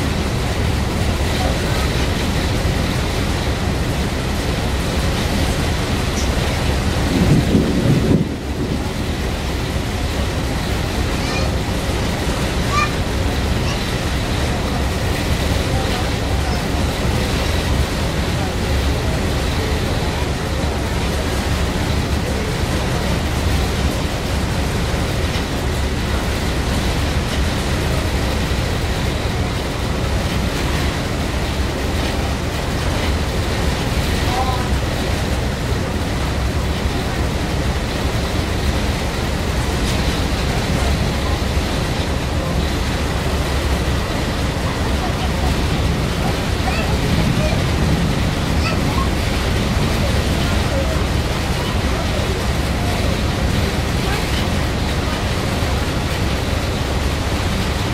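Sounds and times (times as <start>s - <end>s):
wind noise: 0.0s - 15.5s
rain: 0.0s - 57.9s
thunder rumbling: 0.0s - 57.9s.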